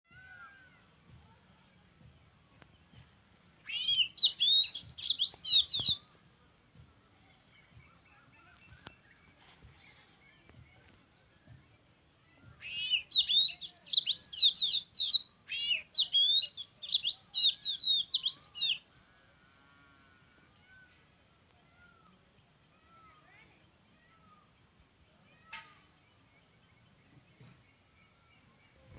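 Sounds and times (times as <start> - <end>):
songbird warbling: 3.6 - 6.1, 12.6 - 18.9.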